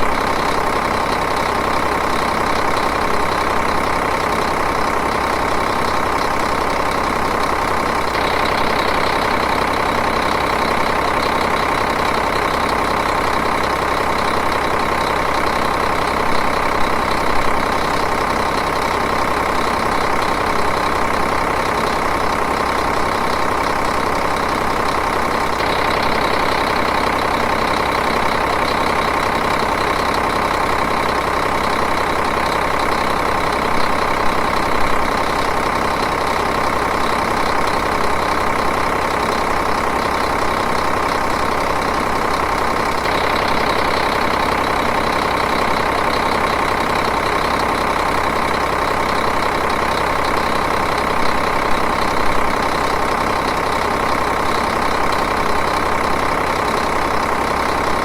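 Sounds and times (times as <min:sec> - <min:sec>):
diesel engine idling: 0:00.0 - 0:58.0.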